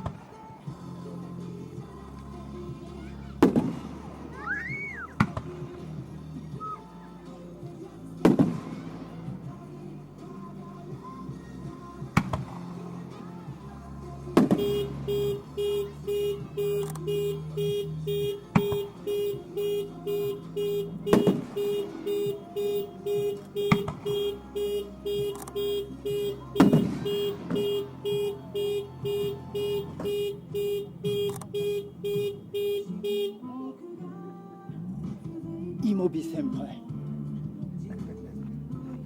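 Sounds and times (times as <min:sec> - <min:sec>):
fireworks bursting: 0:03.4 - 0:06.0, 0:08.2 - 0:09.7, 0:14.4 - 0:32.7
electronic beeping: 0:14.6 - 0:32.3.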